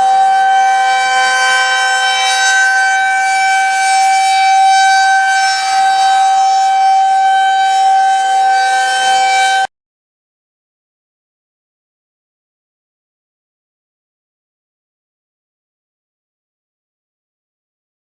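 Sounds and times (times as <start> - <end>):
warning siren steady tone: 0.0 - 9.7.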